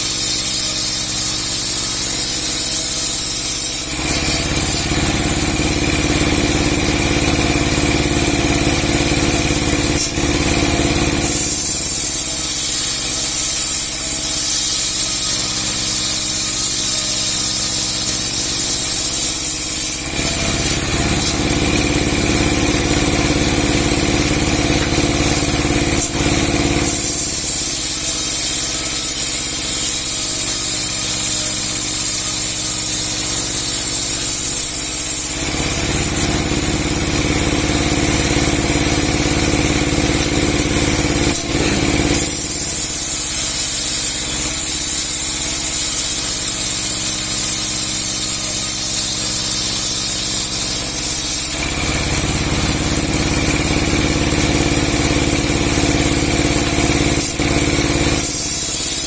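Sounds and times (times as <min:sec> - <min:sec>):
sawmill blade hissing and humming: 0:00.0 - 0:59.0.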